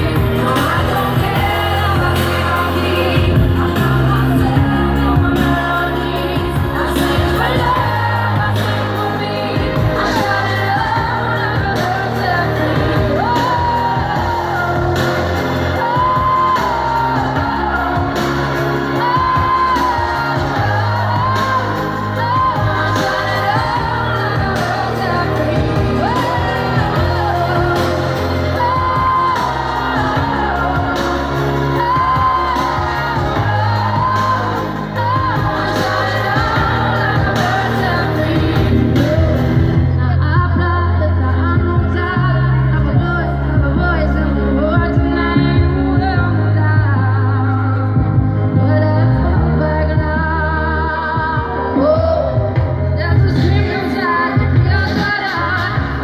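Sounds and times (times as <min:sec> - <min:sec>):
live band with bass line: 0:00.0 - 0:56.0
woman singing: 0:00.0 - 0:56.0.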